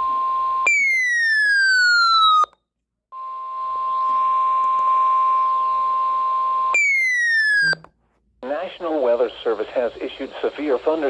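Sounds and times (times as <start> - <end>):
radio hiss: 8.4 - 11.0.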